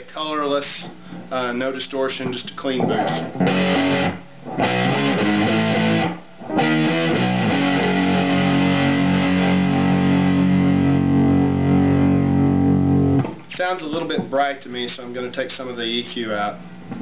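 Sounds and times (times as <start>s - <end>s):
fuzzed electric guitar chords: 2.8s - 13.4s.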